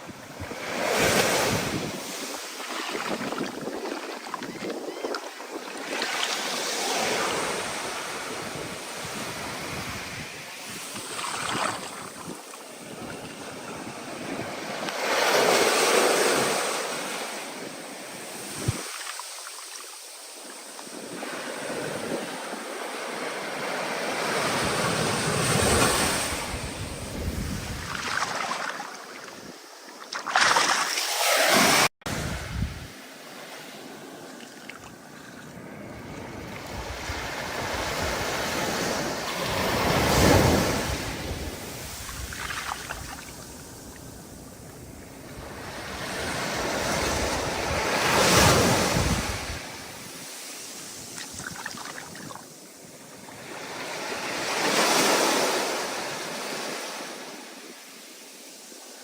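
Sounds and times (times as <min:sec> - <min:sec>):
stormy wind: 0:24.5 - 0:28.6, 0:32.1 - 0:33.0, 0:35.6 - 0:50.1.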